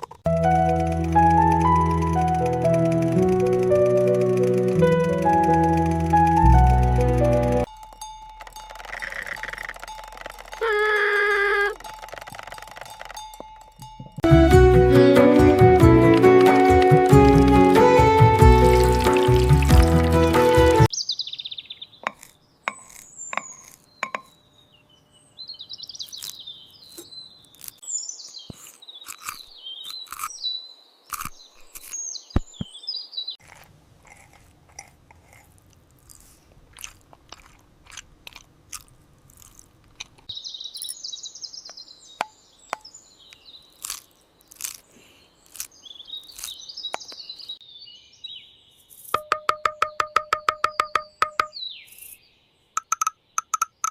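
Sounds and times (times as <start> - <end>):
birds chirping: 17.4 - 33.5, 40.2 - 53.9
sharp clicks and taps: 49.1 - 51.5, 52.8 - 53.9.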